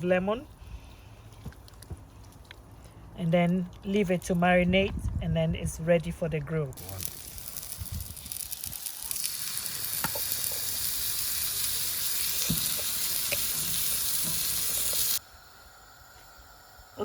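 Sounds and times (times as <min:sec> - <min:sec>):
food sizzling: 0:06.8 - 0:15.2.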